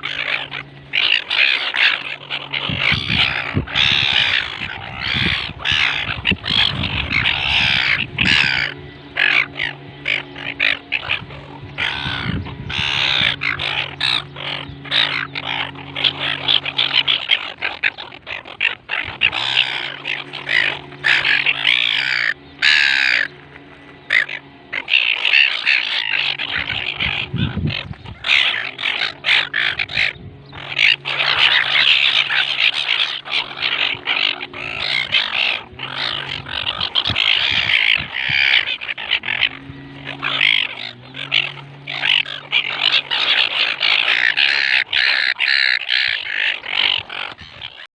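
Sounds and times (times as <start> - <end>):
gulls calling: 0.0 - 47.9
steady low hum: 0.0 - 47.9.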